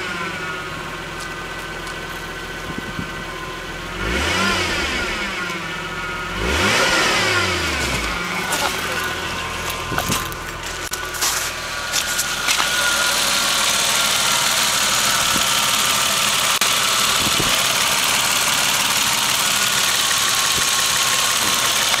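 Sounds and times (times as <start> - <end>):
car engine running: 0.0 - 22.0.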